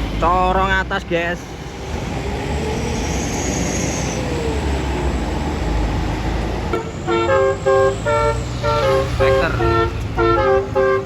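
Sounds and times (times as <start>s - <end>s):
bus traffic rumble: 0.0s - 11.0s
bus horn playing quick tune: 6.7s - 11.0s.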